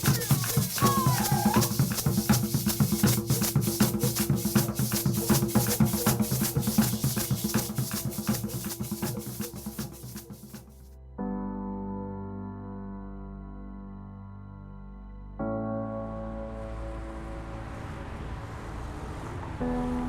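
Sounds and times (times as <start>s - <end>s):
drums and shakers rhythm: 0.0s - 10.9s
soft sustained keyboard music: 10.8s - 20.0s.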